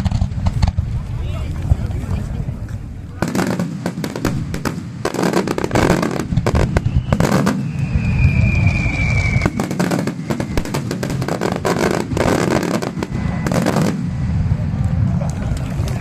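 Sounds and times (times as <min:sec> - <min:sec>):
steady low rumble: 0:00.0 - 0:07.1, 0:10.6 - 0:16.0
firework bursts and crackles: 0:00.0 - 0:16.0
whistling firework shell: 0:04.2 - 0:14.4.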